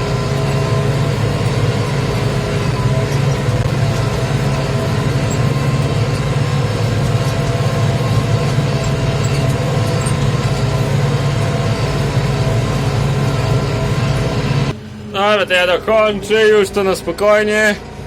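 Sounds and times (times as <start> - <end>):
tractor engine under load: 0.0 - 18.0.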